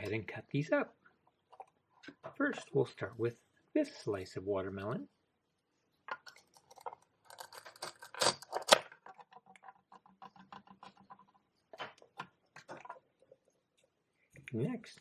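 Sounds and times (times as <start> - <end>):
velcro tearing apart: 7.4 - 8.8.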